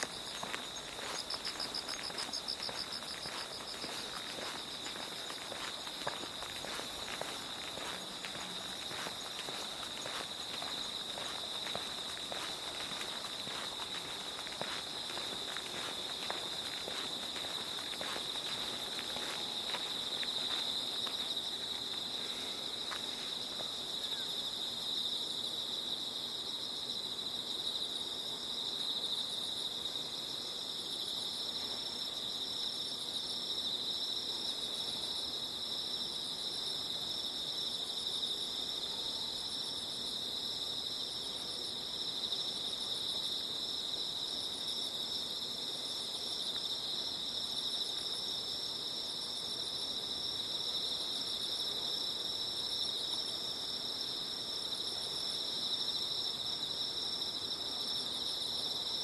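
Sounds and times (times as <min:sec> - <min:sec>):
insect chirping in pulsed bursts: 0:00.0 - 0:22.9
footsteps: 0:00.0 - 0:23.8
insects trilling: 0:00.0 - 0:25.7.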